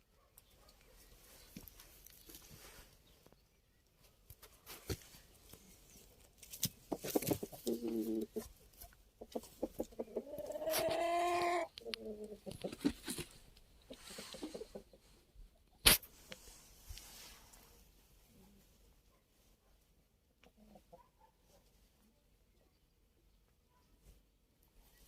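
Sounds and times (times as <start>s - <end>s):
hens clucking: 6.7s - 15.8s, 20.4s - 21.2s.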